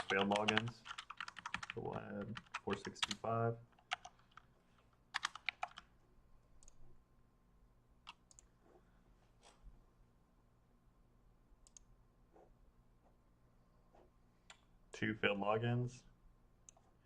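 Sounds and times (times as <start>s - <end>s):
computer keyboard typing: 0.0s - 4.5s, 5.1s - 5.9s.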